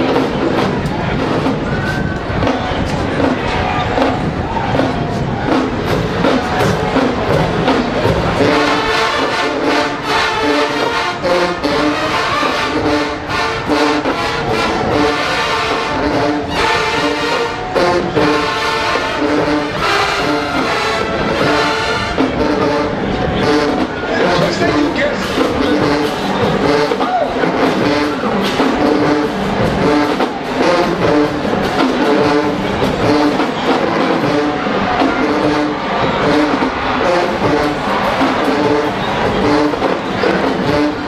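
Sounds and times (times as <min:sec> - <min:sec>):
drums: 0:00.0 - 0:41.0
marching band music: 0:00.0 - 0:41.0
stadium crowd cheering: 0:00.0 - 0:41.0
brass playing short notes: 0:08.3 - 0:41.0.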